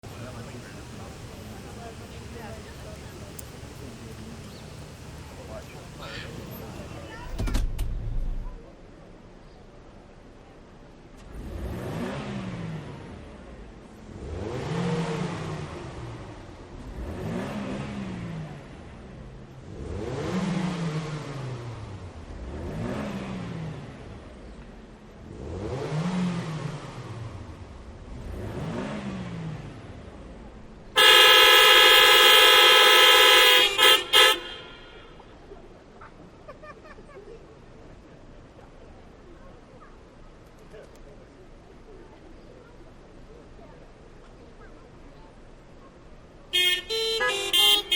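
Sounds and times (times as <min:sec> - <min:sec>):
car engines revving: 0:00.0 - 0:07.4, 0:11.2 - 0:35.9, 0:45.6 - 0:47.9
car horn blast: 0:31.0 - 0:35.2, 0:46.6 - 0:47.9.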